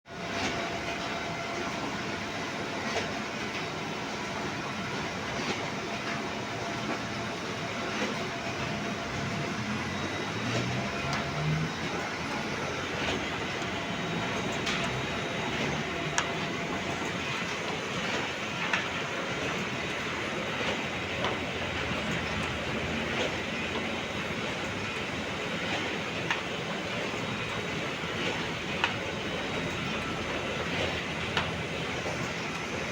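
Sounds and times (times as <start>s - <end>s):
printing press whirring: 0.1s - 32.9s
printing press clicks: 9.9s - 32.8s.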